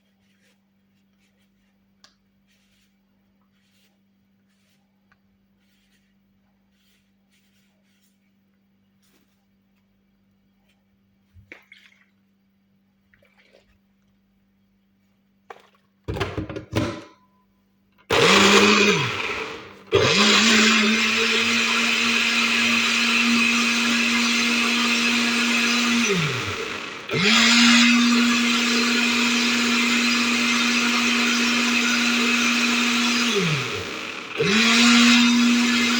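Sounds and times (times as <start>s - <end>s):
electric blender running: 18.1s - 35.9s.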